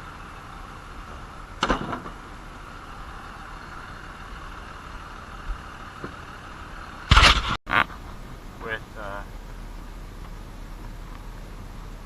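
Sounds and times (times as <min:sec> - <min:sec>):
vehicle engine running: 0:00.0 - 0:12.0.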